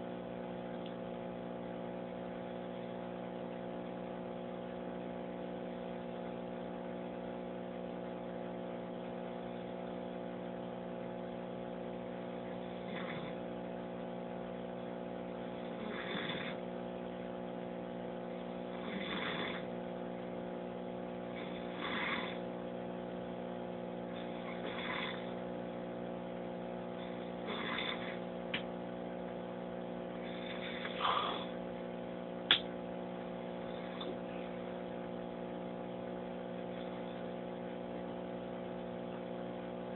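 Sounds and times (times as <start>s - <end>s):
electrical hum: 0.0s - 39.9s
man snoring: 12.4s - 13.5s, 15.5s - 16.6s, 18.6s - 19.8s, 21.3s - 22.5s, 24.1s - 25.4s, 27.0s - 28.3s, 30.1s - 31.6s, 33.6s - 34.6s.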